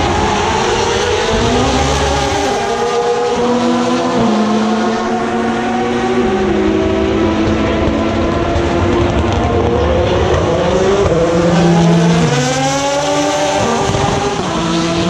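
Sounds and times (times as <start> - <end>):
race car engines downshifting: 0.0 - 15.0.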